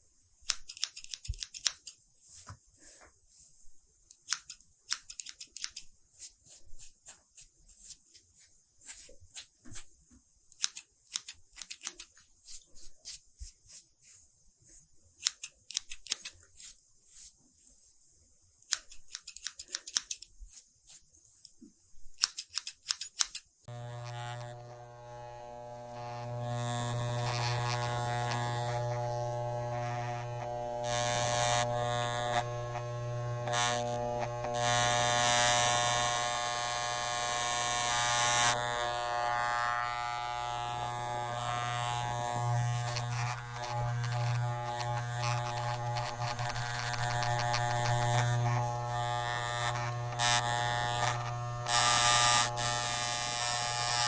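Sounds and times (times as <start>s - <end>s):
electric hair clipper buzzing: 23.7s - 54.0s.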